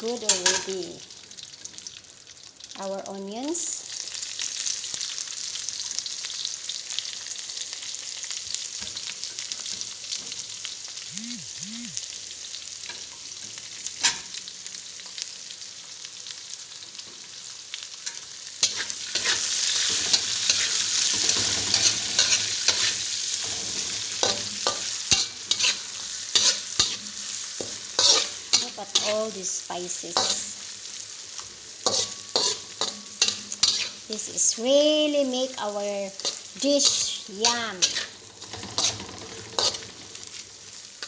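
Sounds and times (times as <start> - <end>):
onions sizzling in oil: 0.0 - 41.0
stirring clicks and scrapes on pan: 18.1 - 29.1, 31.4 - 34.0, 36.2 - 40.5.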